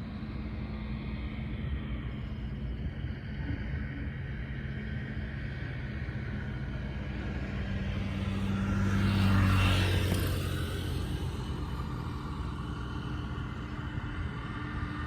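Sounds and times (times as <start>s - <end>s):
vehicle driving past: 7.6s - 13.0s.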